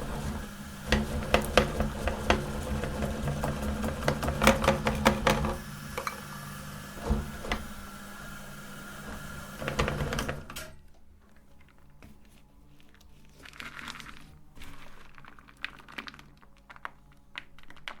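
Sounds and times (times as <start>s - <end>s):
meat grinder motor humming: 0.0s - 10.6s
cracks of soap being ground: 13.4s - 18.0s.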